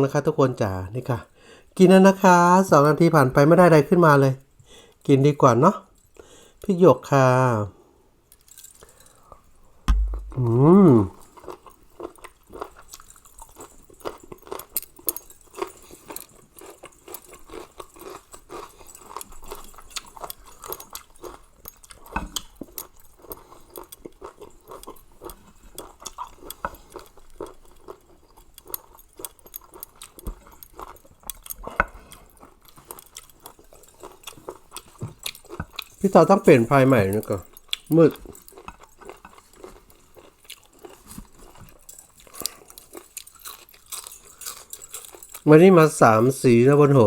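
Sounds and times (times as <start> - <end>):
person chewing food: 8.4 - 45.5
mouth clicks: 9.9 - 11.2.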